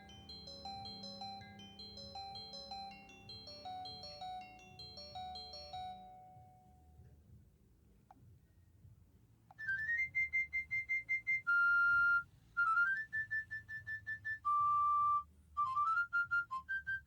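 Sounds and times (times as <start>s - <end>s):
whistle-like synthesized ringtone: 0.0s - 6.6s.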